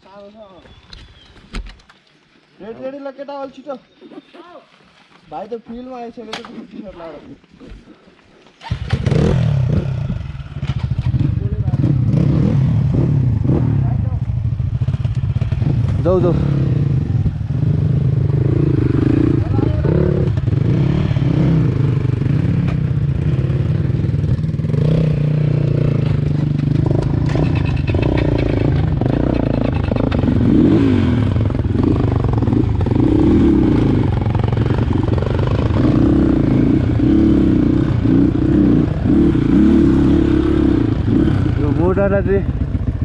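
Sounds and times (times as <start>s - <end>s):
dirt bike engine revving: 8.6s - 43.0s
bike clatter: 26.0s - 30.3s.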